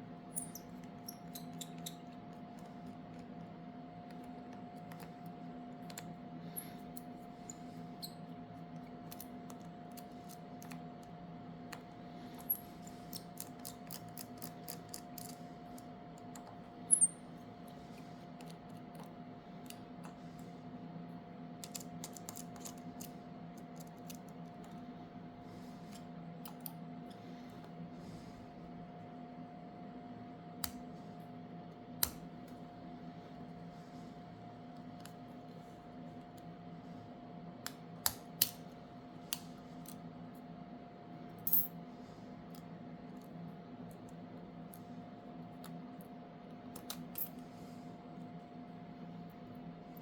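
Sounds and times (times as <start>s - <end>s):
small tools clicking on phone parts: 8.8s - 17.1s, 21.6s - 24.8s, 46.7s - 47.4s.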